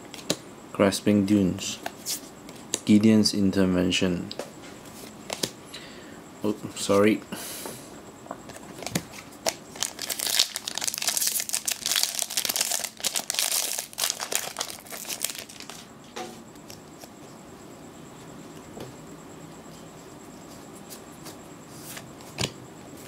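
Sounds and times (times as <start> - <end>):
foil wrapper tearing and crinkling: 9.4 - 15.8.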